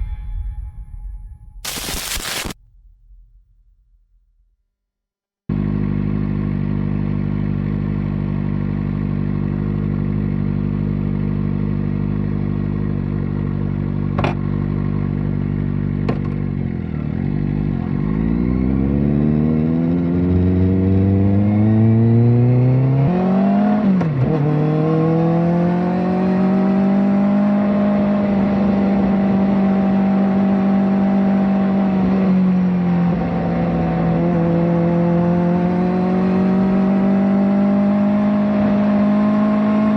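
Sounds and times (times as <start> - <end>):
sharp clicks: 1.6 - 3.8
motorcycle engine revving: 5.5 - 39.9.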